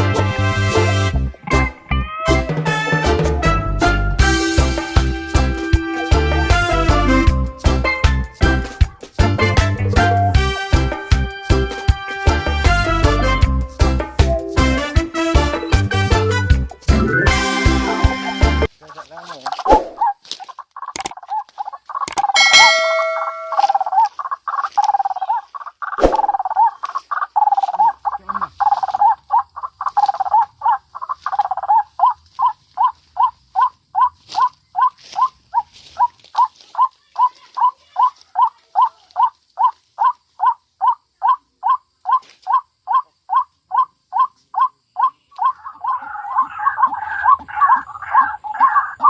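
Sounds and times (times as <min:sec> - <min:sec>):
waterhen calling: 0:18.8 - 0:49.0.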